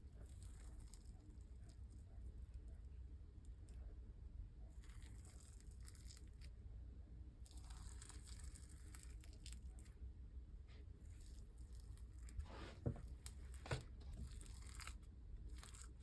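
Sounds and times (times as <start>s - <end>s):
slime crackling and squishing: 0.0s - 2.8s, 4.7s - 6.7s, 7.3s - 10.0s, 10.7s - 16.0s.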